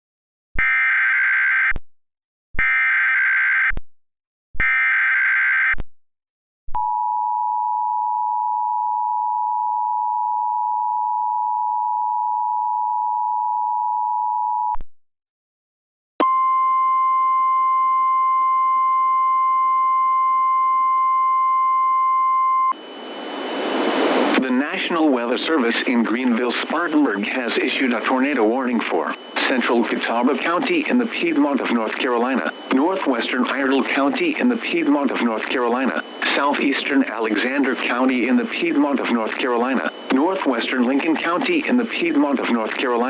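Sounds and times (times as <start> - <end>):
steady warning alarm tone: 20.6 - 43.0
data header bursts: 24.4 - 43.0.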